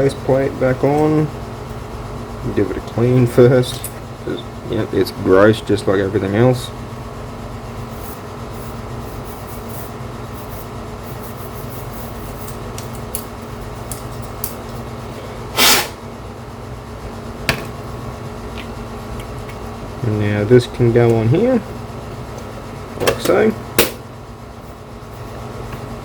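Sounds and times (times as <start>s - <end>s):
fan humming: 0.0s - 26.0s
loud cleaning noise: 15.5s - 16.0s.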